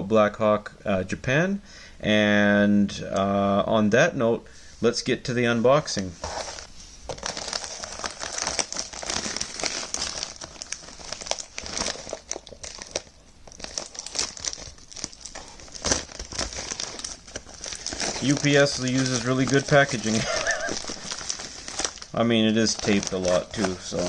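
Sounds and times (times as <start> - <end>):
parcel wrapping crinkling: 6.2 - 24.0.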